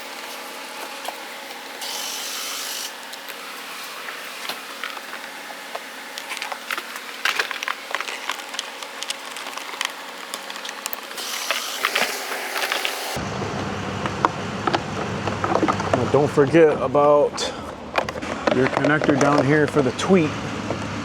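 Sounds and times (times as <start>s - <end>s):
plastic parts clicking and scraping: 1.8s - 13.2s, 17.9s - 19.9s.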